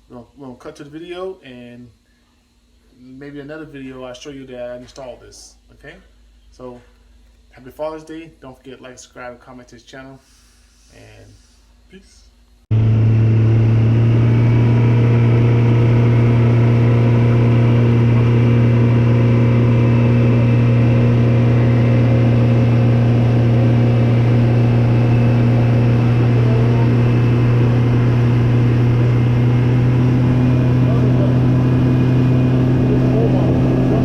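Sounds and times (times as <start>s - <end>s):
outboard motor droning: 12.7s - 34.0s.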